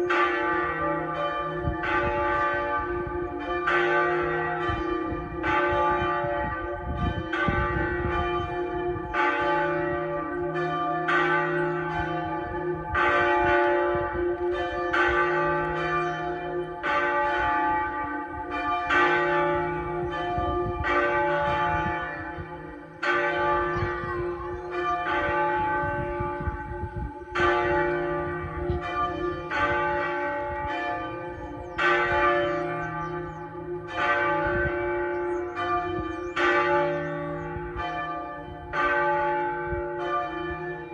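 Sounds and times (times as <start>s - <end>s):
church bells ringing: 0.0s - 40.9s.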